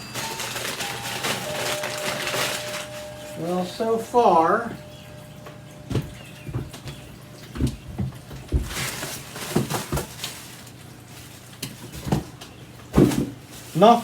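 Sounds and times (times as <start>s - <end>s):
paper crinkling: 0.0s - 12.4s, 13.3s - 14.0s
packing paper rustling: 0.0s - 14.0s
parts knocking in box: 12.9s - 13.4s.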